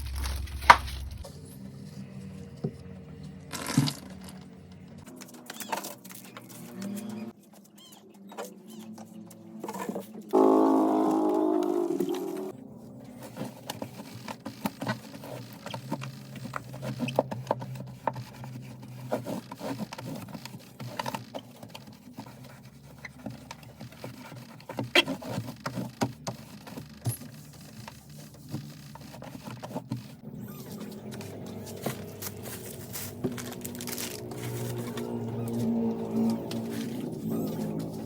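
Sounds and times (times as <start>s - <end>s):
small items tapping and scraping: 31.0s - 35.7s.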